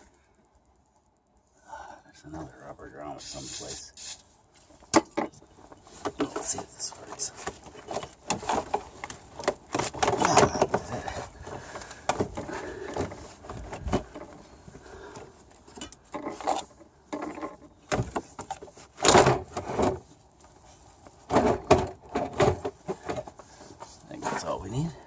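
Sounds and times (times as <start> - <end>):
clunks and rattles of engine parts: 4.6 - 24.0.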